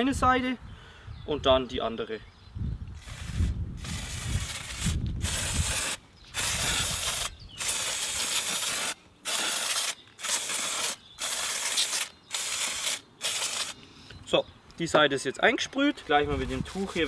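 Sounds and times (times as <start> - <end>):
aerosol spray hissing: 3.0 - 13.8.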